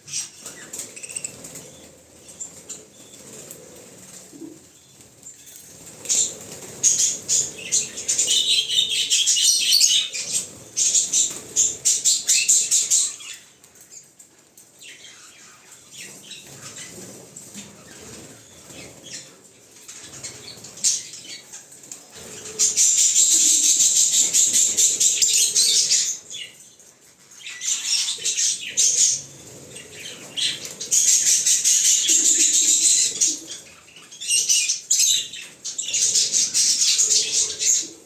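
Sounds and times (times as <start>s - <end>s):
lovebirds chattering: 0.0s - 4.7s, 5.4s - 13.4s, 22.2s - 26.6s, 27.4s - 38.0s.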